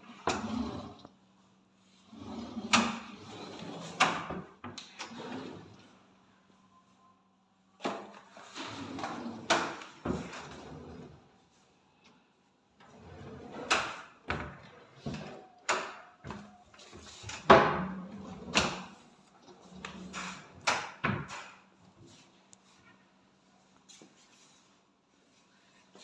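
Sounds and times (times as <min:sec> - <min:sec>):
cabinet doors and drawers knocking: 0:17.4 - 0:18.8.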